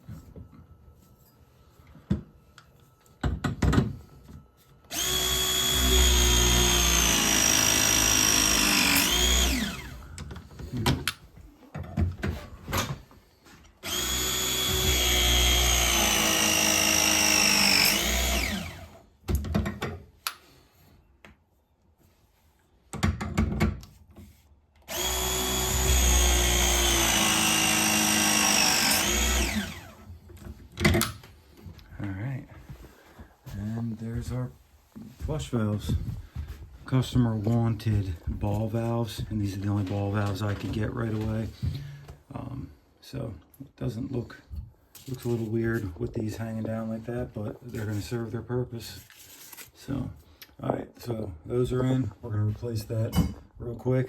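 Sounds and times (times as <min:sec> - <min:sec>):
crimping tool motor pressing: 0:04.9 - 0:10.0, 0:13.8 - 0:19.0, 0:24.9 - 0:30.1.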